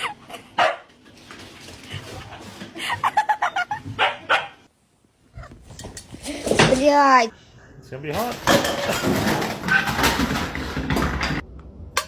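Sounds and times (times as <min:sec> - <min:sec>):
dog barking and yipping: 0:00.5 - 0:00.9, 0:03.9 - 0:04.7.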